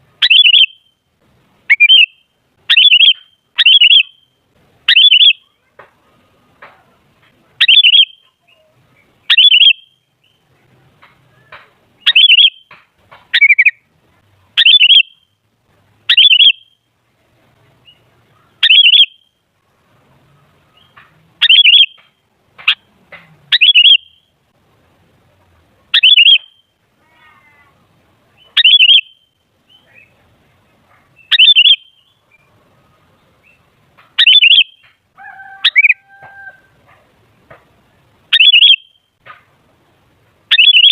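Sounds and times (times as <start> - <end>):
bird calling: 0.2 - 0.9, 1.7 - 4.3, 4.9 - 13.9, 14.5 - 15.3, 16.1 - 16.8, 17.8 - 19.3, 20.3 - 24.3, 25.9 - 37.1, 38.3 - 39.6, 40.5 - 40.9.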